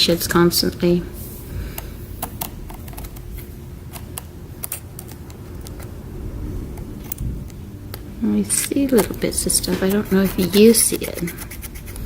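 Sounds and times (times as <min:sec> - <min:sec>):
laptop keyboard clicking: 0:02.2 - 0:03.2.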